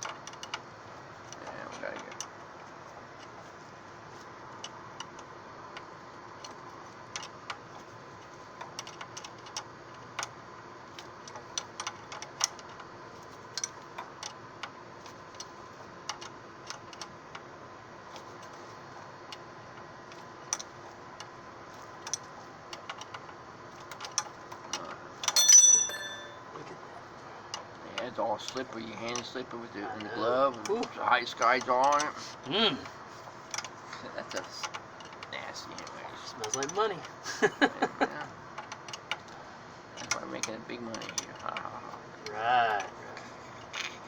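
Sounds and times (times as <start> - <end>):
steady background hum: 0.0 - 44.0
hand tools clicking and tapping metal: 19.8 - 26.8, 27.5 - 39.4, 40.0 - 44.0.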